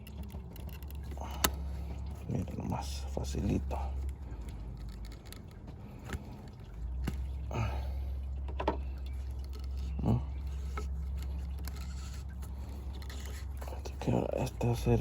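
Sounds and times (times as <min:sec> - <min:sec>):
pliers and hose fittings clicking: 0:00.0 - 0:01.7
steady low hum: 0:00.0 - 0:15.0.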